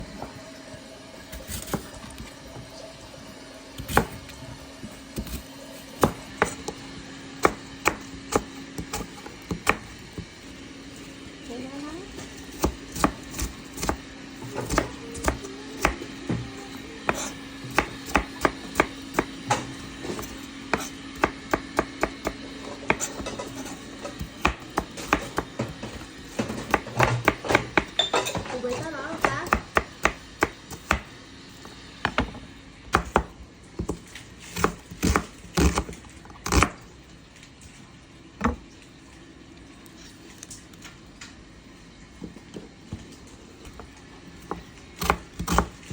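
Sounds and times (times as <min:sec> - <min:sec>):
knife chopping on cutting board: 0:01.3 - 0:02.3, 0:03.8 - 0:04.4, 0:05.1 - 0:06.8, 0:07.4 - 0:10.3, 0:12.2 - 0:36.8, 0:43.7 - 0:45.9.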